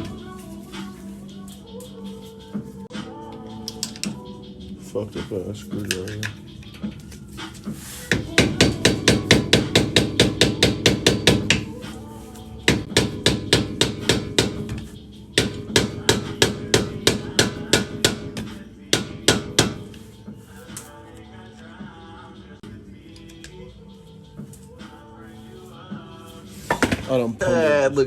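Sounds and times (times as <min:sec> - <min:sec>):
rapid hammer blows on metal: 0:08.1 - 0:11.8, 0:12.7 - 0:20.0.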